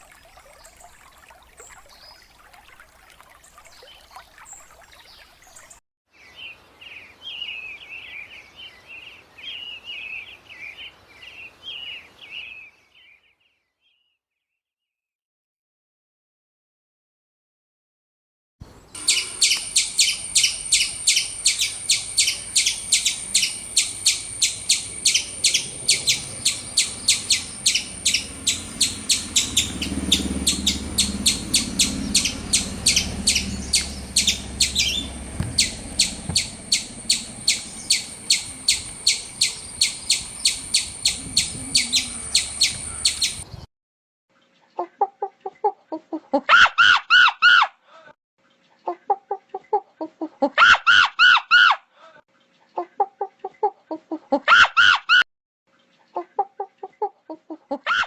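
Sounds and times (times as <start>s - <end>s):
bird chirping rapidly: 18.9s - 43.7s
hen clucking: 30.5s - 43.4s.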